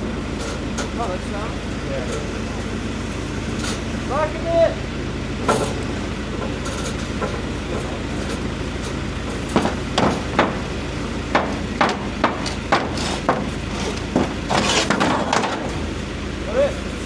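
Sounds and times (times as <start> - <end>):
digger engine running: 0.0 - 17.0
demolition knocks and bangs: 7.2 - 15.9.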